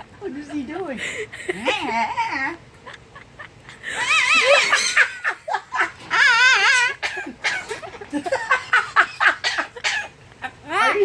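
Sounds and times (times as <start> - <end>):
woman laughing: 0.5 - 11.0.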